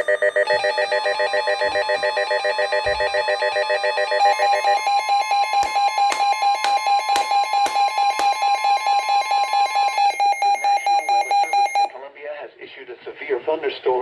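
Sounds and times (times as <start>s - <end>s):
weather radio alarm beeping: 0.0s - 12.0s.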